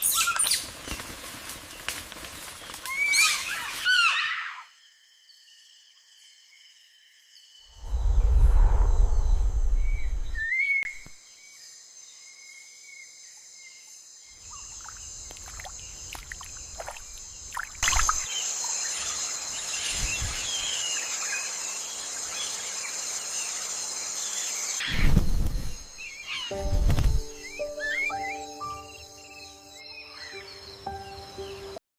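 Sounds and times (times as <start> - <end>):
low rumble: 7.8 - 11.1
bird chirps: 24.9 - 31.8.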